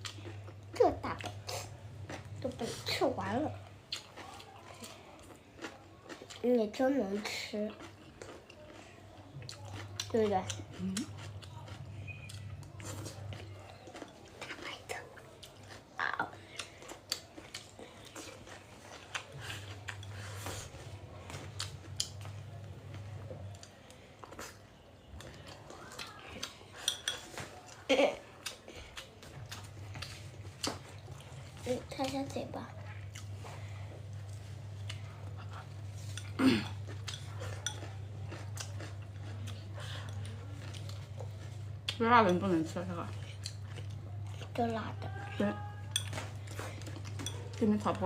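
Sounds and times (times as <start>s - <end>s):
low steady hum: 0.0s - 48.0s
steady low hum: 26.4s - 48.0s.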